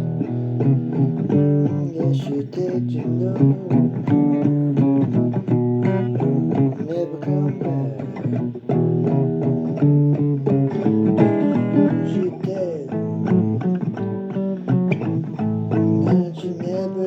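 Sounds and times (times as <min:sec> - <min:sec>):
lead guitar bending notes: 0:00.0 - 0:17.0
blues band playing: 0:08.2 - 0:16.2.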